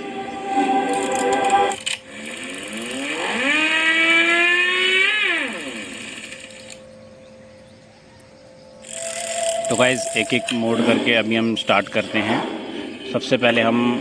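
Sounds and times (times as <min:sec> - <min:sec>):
synthesized engine rev: 0:00.0 - 0:06.9, 0:08.8 - 0:14.0
short electronic tone: 0:08.8 - 0:11.6.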